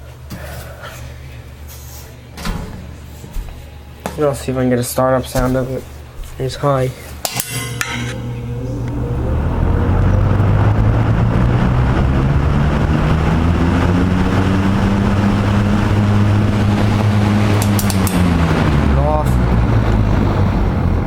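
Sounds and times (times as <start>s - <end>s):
box fan running: 0.0s - 21.0s.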